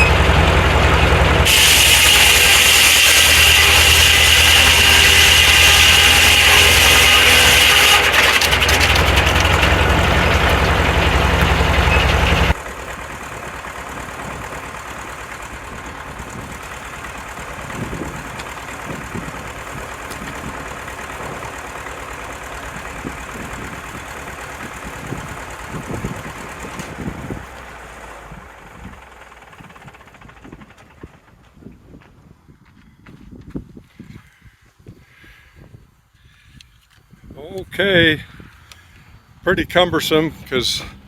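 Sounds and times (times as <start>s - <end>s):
saw blade cutting log: 0.0s - 12.6s
engine hum: 0.0s - 32.7s.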